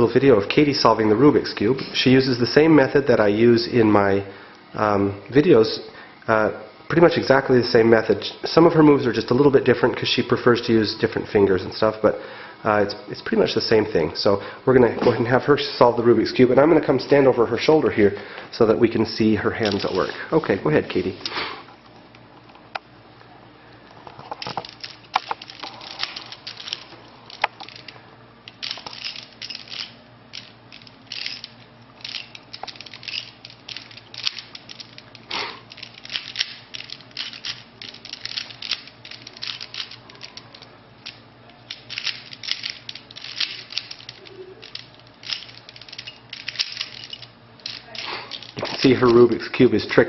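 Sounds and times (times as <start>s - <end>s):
puzzle cube clicking and rattling: 19.6s - 20.1s, 24.2s - 49.2s.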